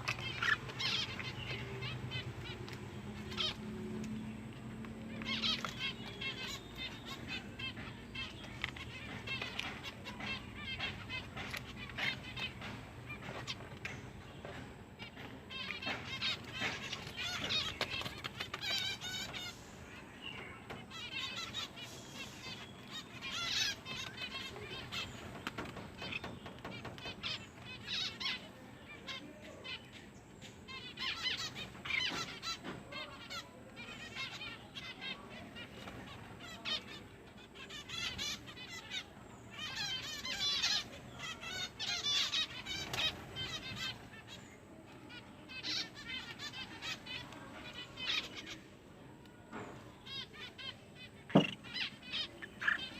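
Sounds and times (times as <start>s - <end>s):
small bird chirping and warbling: 0.0s - 52.9s.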